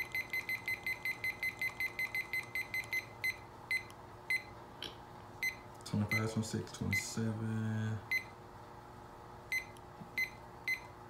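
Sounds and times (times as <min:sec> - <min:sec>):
digital timer beeping: 0:00.0 - 0:04.5.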